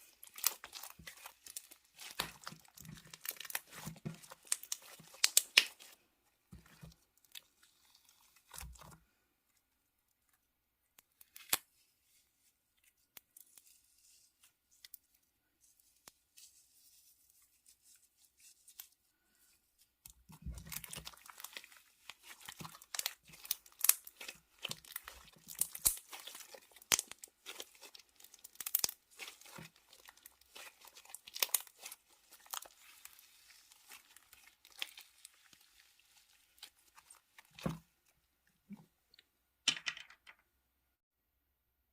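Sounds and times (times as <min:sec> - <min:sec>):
slime crackling and popping: 0:00.0 - 0:06.0, 0:20.2 - 0:37.8.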